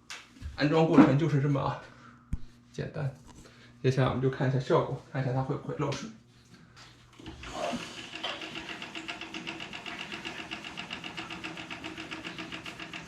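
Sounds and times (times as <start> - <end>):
faint steady hum: 0.1 - 8.4.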